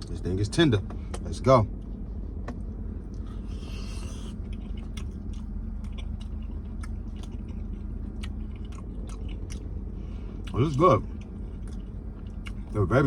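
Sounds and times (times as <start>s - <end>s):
steady low hum: 0.0s - 13.0s
person chewing: 3.1s - 12.8s.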